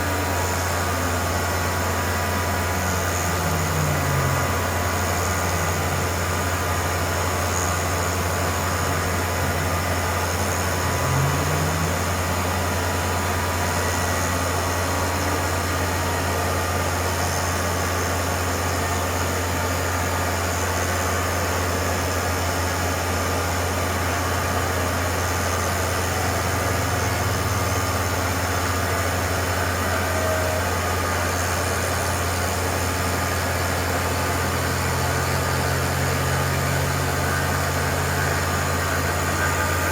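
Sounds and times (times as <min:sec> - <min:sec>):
short rising and falling whines: 0:00.0 - 0:20.0
cnc router milling wood: 0:00.0 - 0:39.9.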